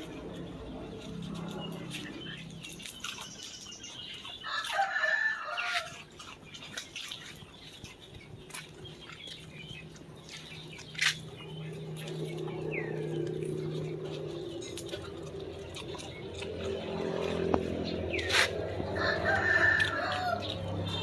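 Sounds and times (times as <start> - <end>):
rooster crowing: 4.5 - 5.9, 18.8 - 20.5.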